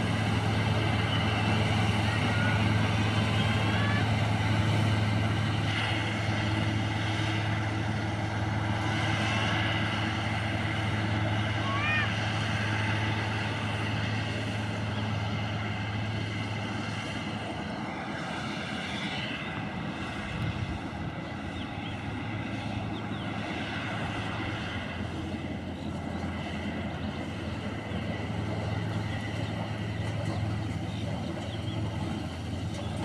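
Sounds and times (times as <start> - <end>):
combine harvester engine drone: 0.0 - 33.0.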